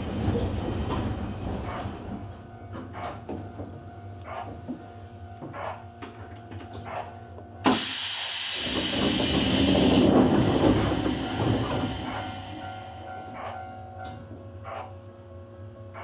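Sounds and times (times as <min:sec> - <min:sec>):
train doors sliding rumble: 0:00.0 - 0:04.6, 0:07.7 - 0:14.3.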